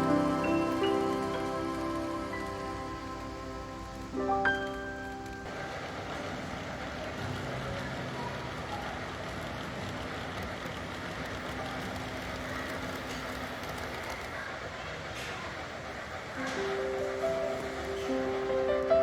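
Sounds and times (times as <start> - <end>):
faint held hum: 0.0 - 6.4
model train rolling rumble: 0.0 - 19.0.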